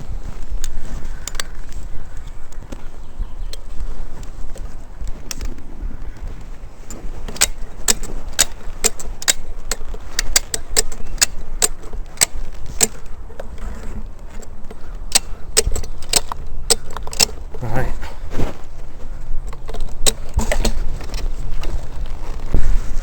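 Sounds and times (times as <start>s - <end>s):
sharp metallic clicks: 6.9s - 17.6s, 19.4s - 21.8s.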